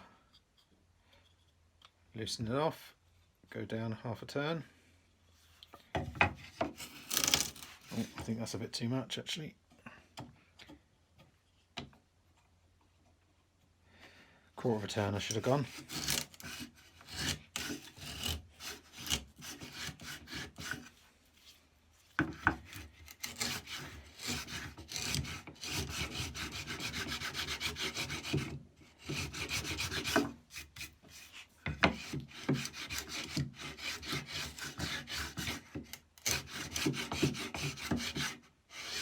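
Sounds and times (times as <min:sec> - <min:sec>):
plane blade scraping wood: 0:06.5 - 0:08.3, 0:15.0 - 0:21.0, 0:22.3 - 0:39.0.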